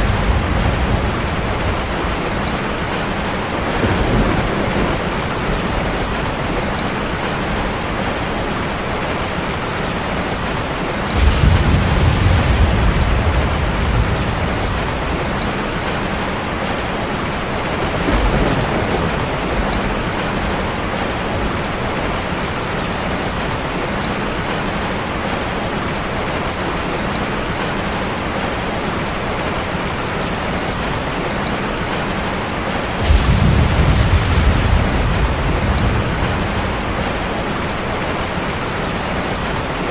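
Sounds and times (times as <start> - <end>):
thunder rumbling: 0.0 - 23.1, 32.5 - 39.8
steady rain: 0.0 - 39.9.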